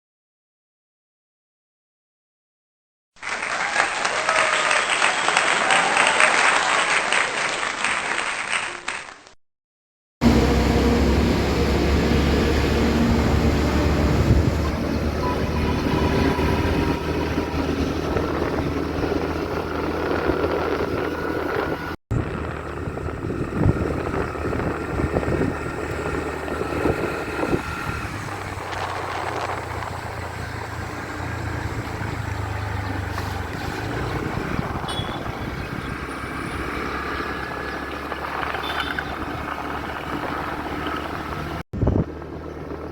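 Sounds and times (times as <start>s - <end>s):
applause-like noise: 3.2s - 9.4s
motorcycle engine running: 10.2s - 42.9s
wind and road noise: 10.2s - 42.9s.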